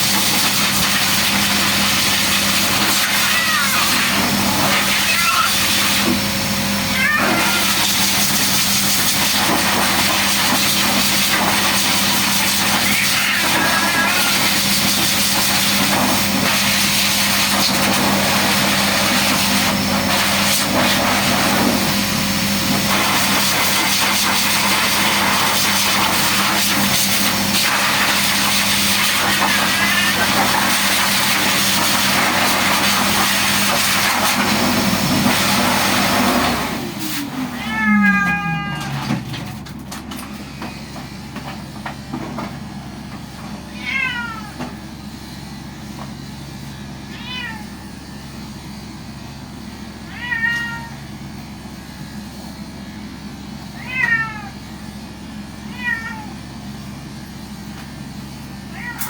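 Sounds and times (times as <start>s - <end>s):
electric grooming tool whirring: 0.0s - 39.4s, 44.3s - 55.7s, 56.4s - 59.0s
cat meowing: 3.0s - 4.1s, 4.9s - 5.8s, 6.9s - 7.8s, 12.7s - 14.6s, 29.5s - 30.4s, 37.5s - 39.3s, 43.7s - 44.6s, 47.1s - 47.7s, 50.1s - 51.0s, 53.8s - 54.6s, 55.7s - 56.4s, 58.7s - 59.0s.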